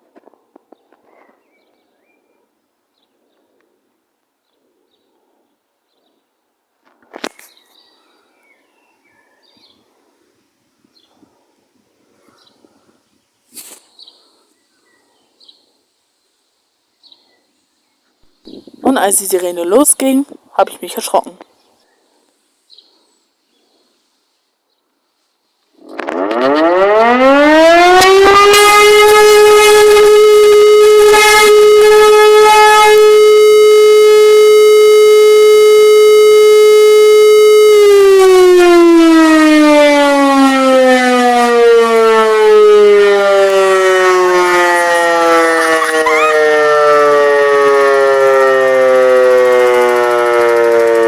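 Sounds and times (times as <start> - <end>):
civil defence siren: 25.8 - 51.0.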